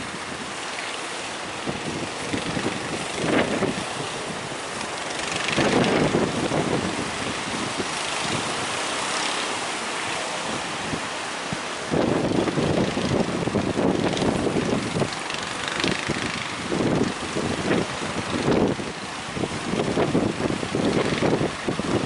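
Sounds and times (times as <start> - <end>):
breaking surf: 0.0 - 22.0
wind buffeting microphone: 0.0 - 22.0.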